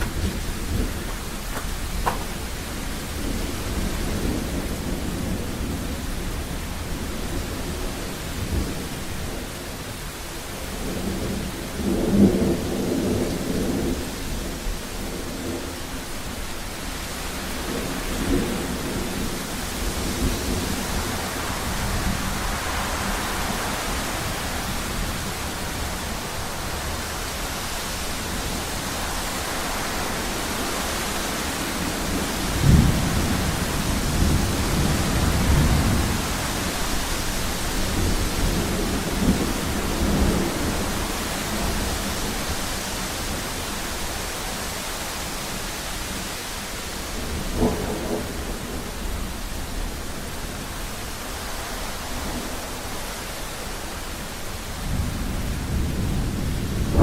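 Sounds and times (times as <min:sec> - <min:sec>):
loud thunder crack: 0:00.0 - 0:05.6, 0:54.8 - 0:57.0
rolling thunder: 0:00.0 - 0:09.4, 0:28.2 - 0:44.7, 0:47.0 - 0:50.7, 0:54.2 - 0:57.0
steady rain hiss: 0:00.0 - 0:57.0.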